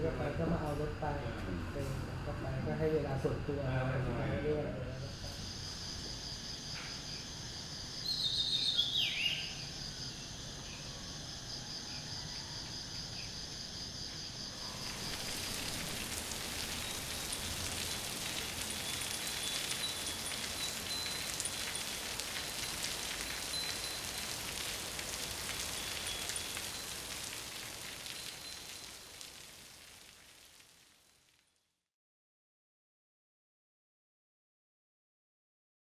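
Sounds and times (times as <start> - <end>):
insect chorus drone: 0.0 - 29.9
insect trills: 4.7 - 31.4
bird call: 8.1 - 9.6.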